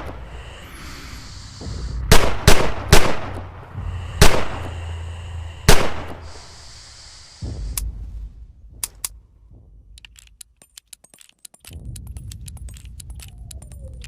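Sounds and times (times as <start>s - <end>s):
revolver metallic clicks: 8.8s - 9.2s, 9.9s - 14.0s.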